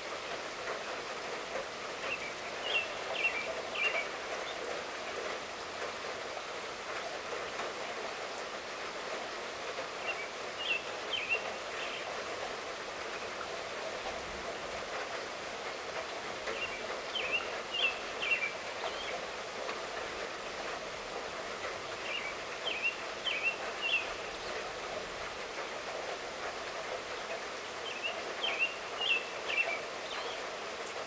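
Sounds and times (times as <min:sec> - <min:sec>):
light rainfall: 0:00.0 - 0:31.0
songbird chirping: 0:02.0 - 0:04.8, 0:10.0 - 0:12.1, 0:16.5 - 0:19.3, 0:22.0 - 0:24.6, 0:27.8 - 0:30.5.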